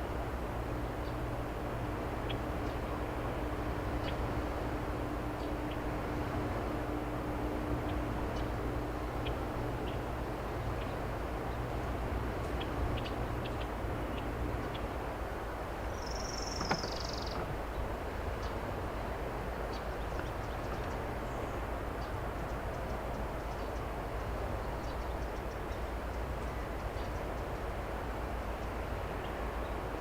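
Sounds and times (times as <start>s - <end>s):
distant excavator engine rumble: 0.0s - 28.4s
bird drooping call: 16.0s - 17.5s.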